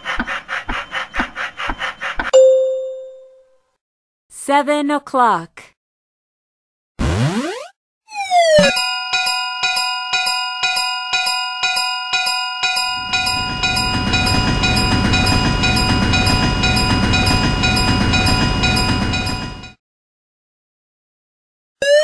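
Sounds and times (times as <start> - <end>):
level crossing warning bell: 8.6 - 19.8
train rumbling past: 13.0 - 19.7.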